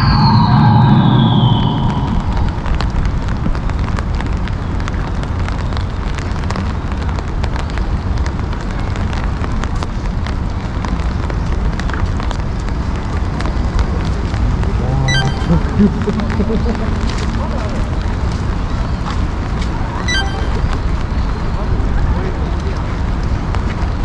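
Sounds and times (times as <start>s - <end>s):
heavy low rumble: 0.0s - 4.4s, 14.0s - 21.1s.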